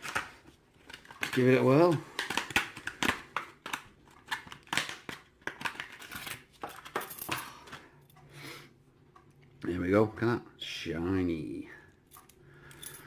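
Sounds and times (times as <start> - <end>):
packaging rustling: 0.0 - 7.8.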